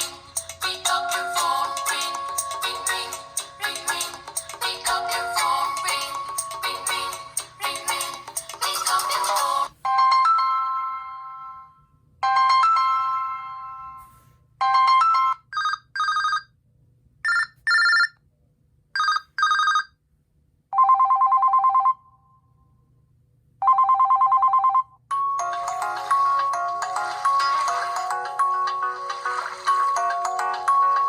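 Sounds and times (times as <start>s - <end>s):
ringtone melody: 0.0s - 16.4s, 23.6s - 31.0s
fast trilling phone ring: 19.0s - 19.9s.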